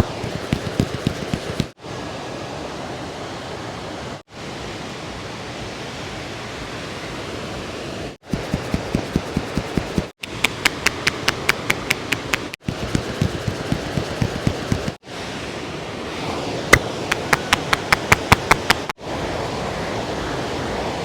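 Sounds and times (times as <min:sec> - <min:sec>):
rapid hand strikes on head: 0:00.0 - 0:01.7, 0:08.3 - 0:15.0, 0:17.1 - 0:18.9.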